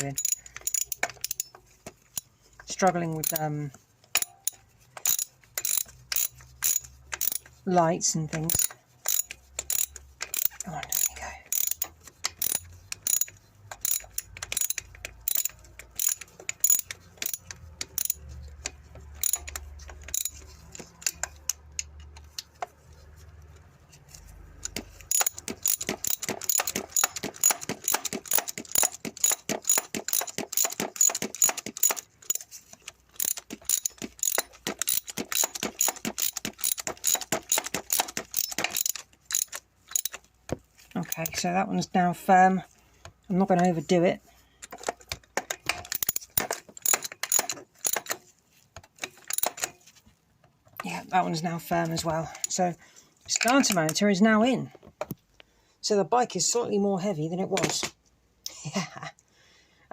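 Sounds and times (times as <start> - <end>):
socket ratchet clicking: 0.0 - 7.6, 8.3 - 22.6, 24.6 - 40.3, 44.6 - 48.2, 48.9 - 49.8.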